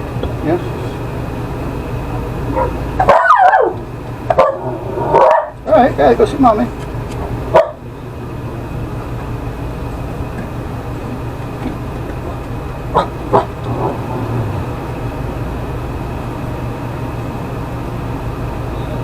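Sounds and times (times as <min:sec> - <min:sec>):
steady low hum: 0:00.0 - 0:19.0
dog barking: 0:02.5 - 0:05.6, 0:07.5 - 0:07.8, 0:12.9 - 0:14.6.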